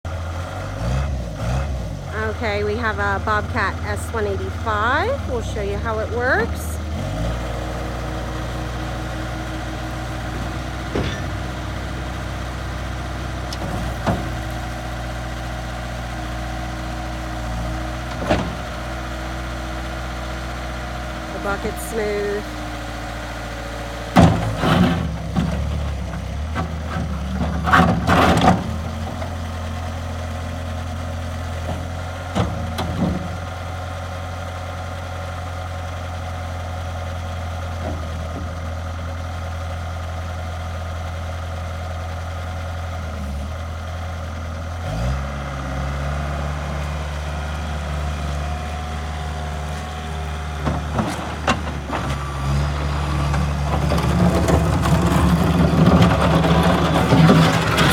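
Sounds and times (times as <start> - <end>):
diesel engine idling and revving: 0.0 - 57.9
knocks and clatter: 50.6 - 57.9.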